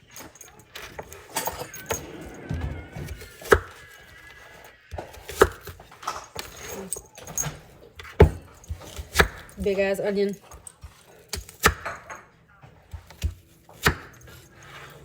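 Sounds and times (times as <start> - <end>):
light clatter and handling: 0.0 - 3.9, 5.0 - 12.3.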